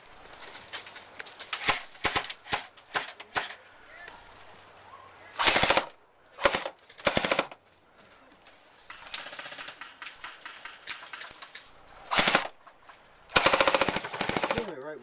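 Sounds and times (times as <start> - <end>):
airsoft guns firing bursts: 1.6 - 3.6, 5.4 - 7.6, 9.0 - 11.4, 12.1 - 12.6, 13.3 - 14.8
distant gunfire bursts: 5.4 - 7.6, 12.1 - 12.6, 13.4 - 14.7.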